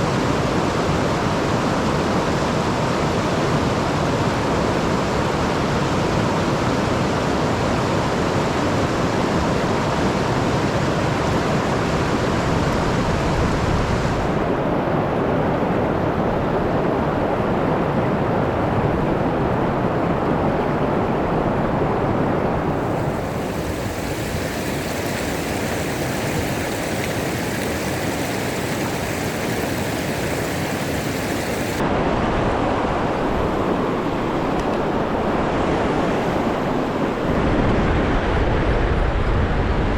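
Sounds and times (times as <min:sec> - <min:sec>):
river water rushing: 0:22.6 - 0:31.8.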